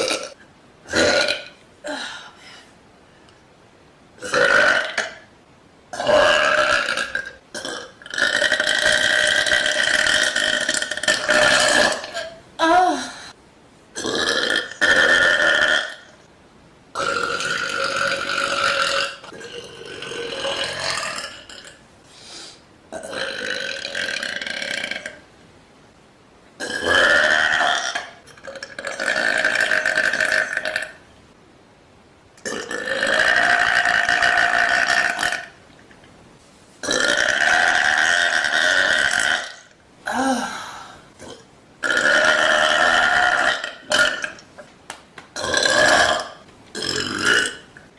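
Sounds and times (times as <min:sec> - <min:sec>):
woman burping loudly: 0:00.0 - 0:02.2, 0:04.2 - 0:05.3, 0:05.9 - 0:13.3, 0:14.0 - 0:16.2, 0:17.0 - 0:21.8, 0:22.9 - 0:25.2, 0:26.6 - 0:31.0, 0:32.4 - 0:35.6, 0:36.8 - 0:44.4, 0:45.4 - 0:47.8.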